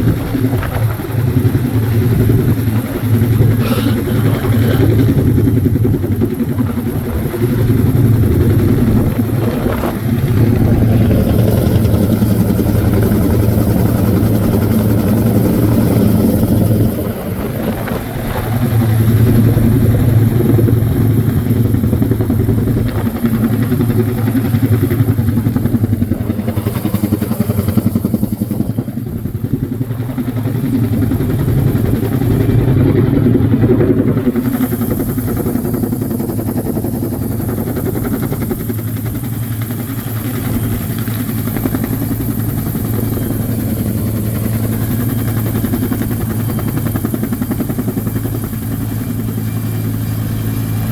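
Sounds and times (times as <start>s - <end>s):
helicopter engine and rotor: 0.0s - 50.9s.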